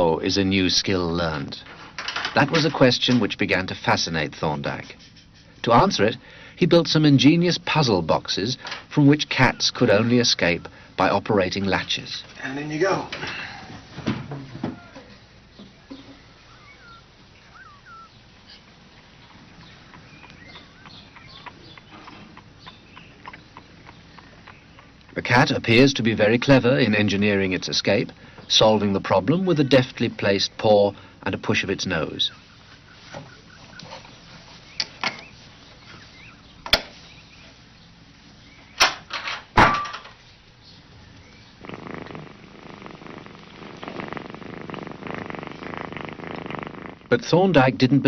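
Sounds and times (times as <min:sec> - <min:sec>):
faint bird chirps: 0:09.3 - 0:11.3, 0:14.7 - 0:25.9, 0:32.2 - 0:38.8.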